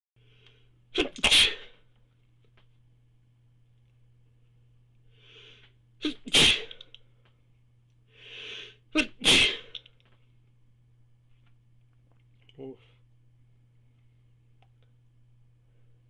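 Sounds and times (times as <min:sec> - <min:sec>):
person sneezing: 0:00.9 - 0:01.8, 0:06.0 - 0:06.9, 0:08.4 - 0:09.9
drawn-in breath: 0:08.1 - 0:08.8.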